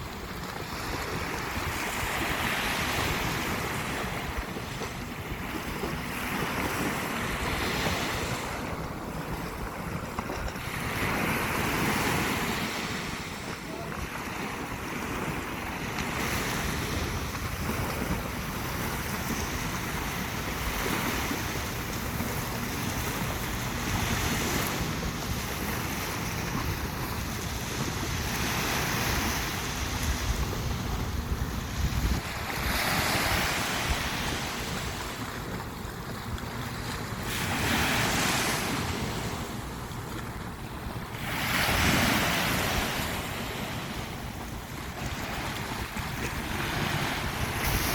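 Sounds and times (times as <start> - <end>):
ocean waves breaking: 0.0 - 47.9
wind buffeting microphone: 0.0 - 47.9.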